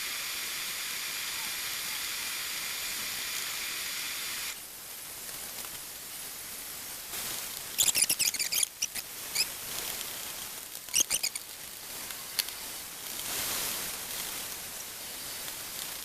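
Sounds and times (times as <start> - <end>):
frying pan sizzle: 0.0 - 16.0
rapid crackling pops: 7.1 - 16.0.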